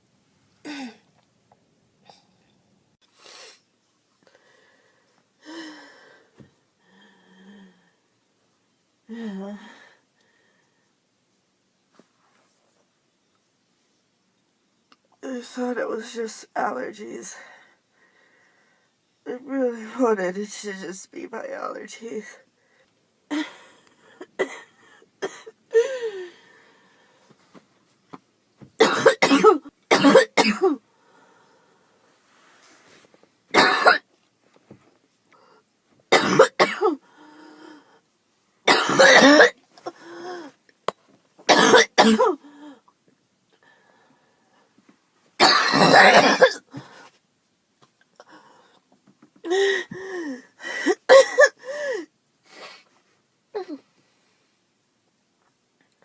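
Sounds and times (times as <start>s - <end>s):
girl coughing harshly: 24.2s - 26.0s, 28.8s - 30.8s, 33.6s - 34.0s, 36.1s - 37.0s, 38.7s - 39.6s, 41.5s - 42.4s, 45.4s - 46.8s, 50.8s - 51.7s.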